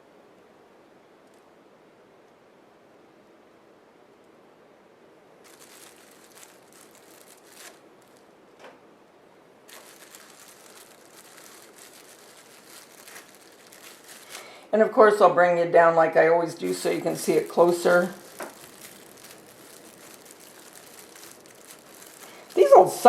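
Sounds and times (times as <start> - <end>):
rustling of crafting pieces: 5.4 - 8.3, 9.7 - 14.7, 16.6 - 23.0.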